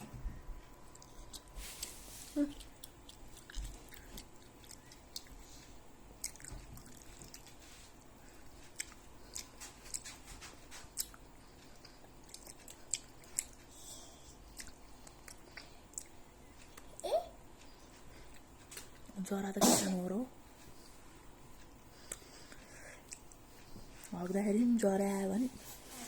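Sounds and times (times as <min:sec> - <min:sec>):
person chewing: 0:00.9 - 0:17.0, 0:17.6 - 0:19.1, 0:21.6 - 0:24.2.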